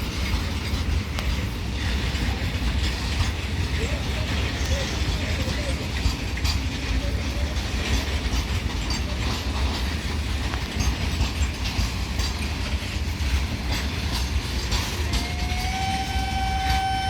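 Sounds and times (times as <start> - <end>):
wheel clicks on rails: 0.0 - 16.9
freight train rumbling: 0.0 - 17.0
train horn: 15.0 - 17.0.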